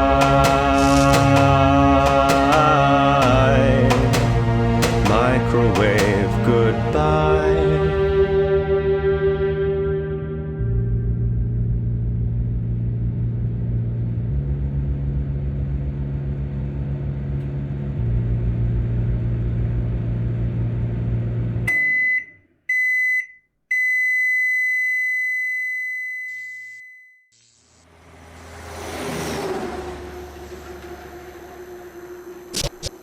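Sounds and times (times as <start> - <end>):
microwave beeps: 21.7 - 27.4.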